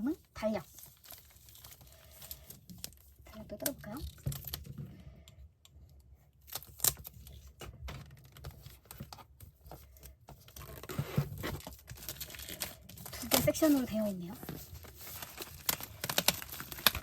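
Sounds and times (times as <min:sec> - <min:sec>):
packaging torn open: 0:06.5 - 0:07.4, 0:10.5 - 0:13.2, 0:14.8 - 0:17.0.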